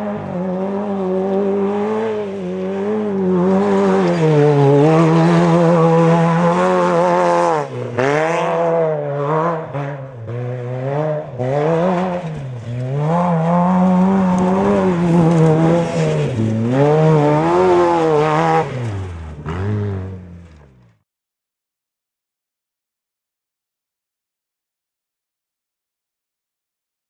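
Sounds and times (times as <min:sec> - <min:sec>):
race buggy engine revving: 0:00.0 - 0:21.0.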